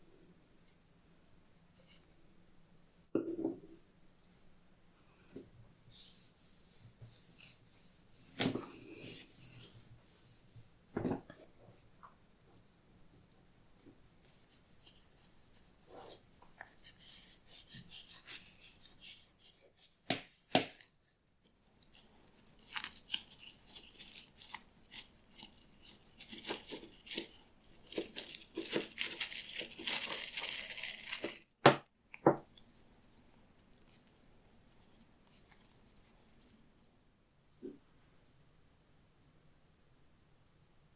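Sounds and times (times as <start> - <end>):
rubbing and scraping leather belt: 14.4 - 31.5.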